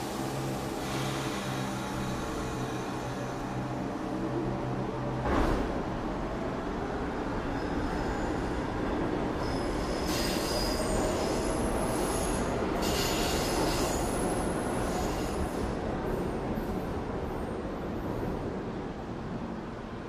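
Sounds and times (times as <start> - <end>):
subway train rumbling: 0.0 - 20.0
high-pitched wheel squeal: 9.4 - 14.2.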